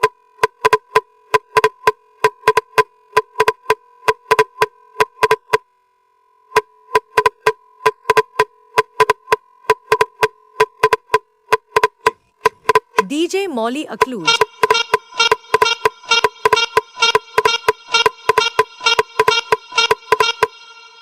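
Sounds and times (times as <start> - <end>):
short beeping tones: 13.1 - 21.0.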